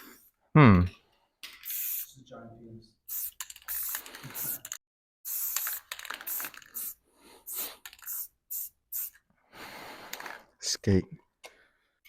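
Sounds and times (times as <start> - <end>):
spray paint can hissing: 1.5 - 2.1, 3.1 - 9.2.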